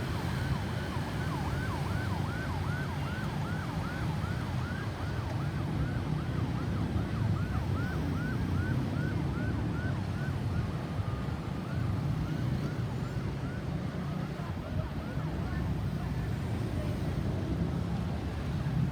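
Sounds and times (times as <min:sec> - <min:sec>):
ambulance siren yelping: 0:00.0 - 0:13.6.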